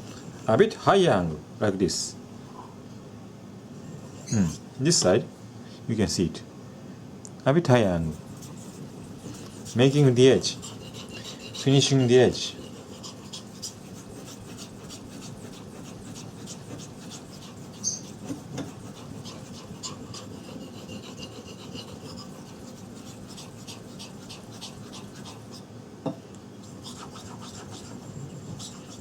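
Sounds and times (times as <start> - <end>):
knife scraping on whetstone: 8.1 - 25.6, 26.6 - 29.0.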